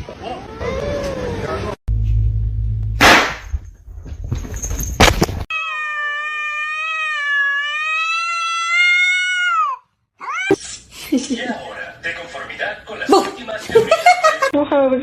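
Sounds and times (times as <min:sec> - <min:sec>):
low hum: 0:01.9 - 0:03.0
cat meowing: 0:05.5 - 0:10.6.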